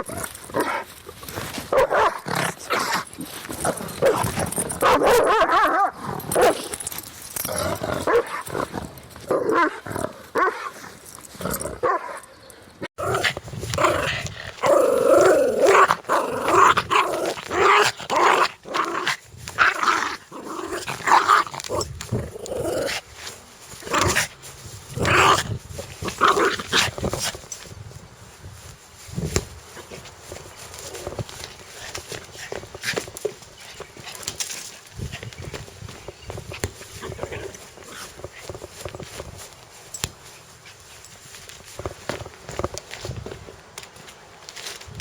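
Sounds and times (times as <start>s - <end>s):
dog growling and snarling: 0.0s - 12.0s, 13.0s - 27.5s, 30.8s - 39.3s
dogs barking: 1.7s - 3.0s, 3.7s - 6.7s, 8.0s - 8.7s, 9.3s - 10.8s, 11.8s - 12.4s.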